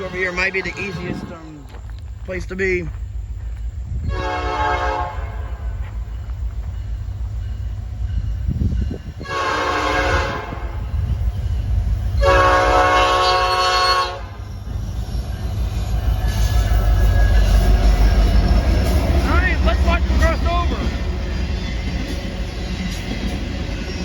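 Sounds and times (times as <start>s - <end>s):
locomotive air horn: 0.0s - 1.2s, 4.1s - 5.8s, 9.2s - 10.9s, 12.2s - 14.4s
train rumbling: 0.0s - 24.0s.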